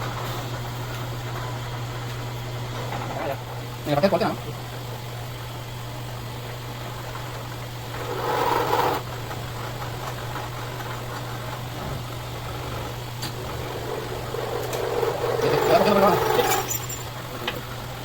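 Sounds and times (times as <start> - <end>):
machine tool motor humming: 7.8 - 17.1.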